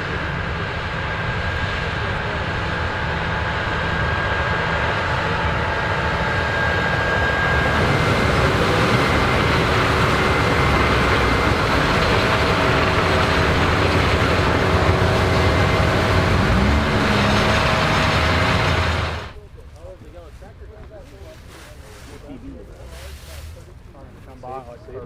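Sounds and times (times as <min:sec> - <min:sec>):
faint machine whines: 0:00.0 - 0:19.4
harvester machinery roar: 0:00.0 - 0:20.0.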